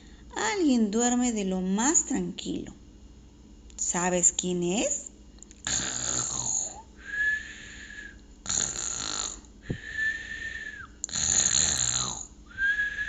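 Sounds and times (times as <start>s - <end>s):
person imitating snoring: 5.7s - 6.8s, 8.4s - 9.5s, 11.0s - 12.4s
high whistle: 9.7s - 11.0s, 12.5s - 13.0s.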